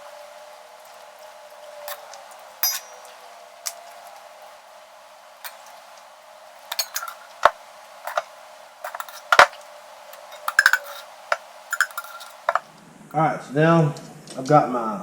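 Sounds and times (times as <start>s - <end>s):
utensil clinking against cookware: 2.6s - 3.1s, 6.7s - 8.2s, 8.8s - 9.6s, 10.2s - 11.0s, 11.7s - 12.6s.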